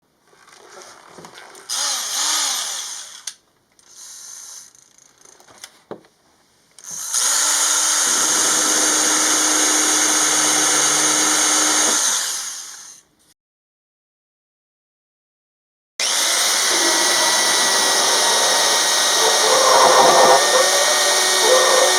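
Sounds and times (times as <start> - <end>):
electric drill grinding metal: 16.0 - 21.9.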